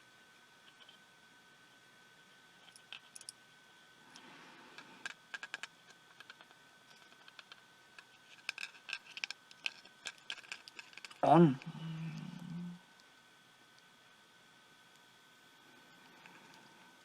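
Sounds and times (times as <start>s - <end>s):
clicks of handling small parts: 2.6s - 3.4s, 4.8s - 11.2s.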